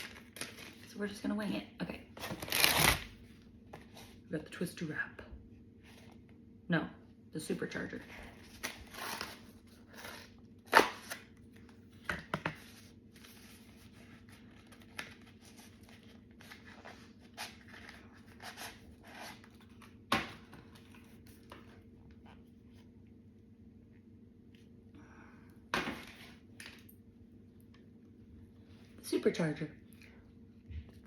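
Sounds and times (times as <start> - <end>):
paper packaging rustling: 0.0 - 1.0, 2.2 - 3.2
faint steady hum: 0.0 - 31.0.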